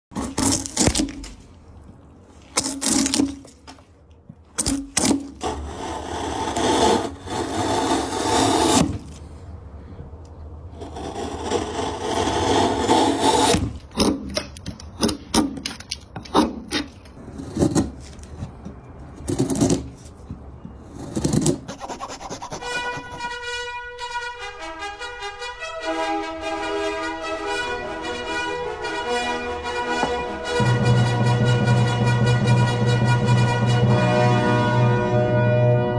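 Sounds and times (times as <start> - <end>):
wood scraping and rubbing: 0.1 - 3.9, 4.6 - 9.3, 10.8 - 23.4
music with horn-like notes: 22.6 - 35.9.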